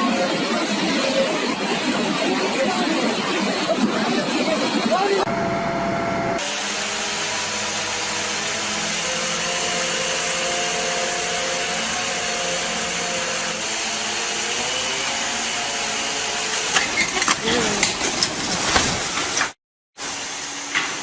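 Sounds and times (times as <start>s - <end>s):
machine running steadily: 0.0s - 21.0s.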